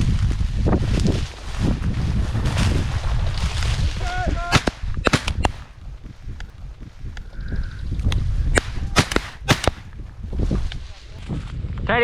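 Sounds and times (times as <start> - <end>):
wind buffeting microphone: 0.0 - 12.0
sharp clicks: 4.6 - 7.3, 8.6 - 10.0.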